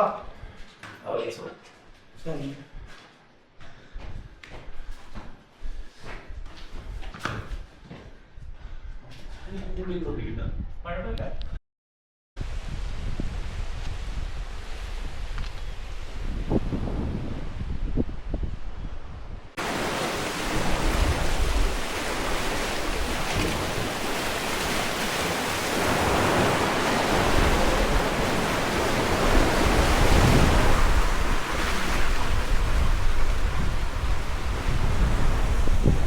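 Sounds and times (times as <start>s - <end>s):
wind buffeting microphone: 9.7s - 11.6s, 12.4s - 19.6s, 20.5s - 36.0s
waves breaking on beach: 19.6s - 36.0s.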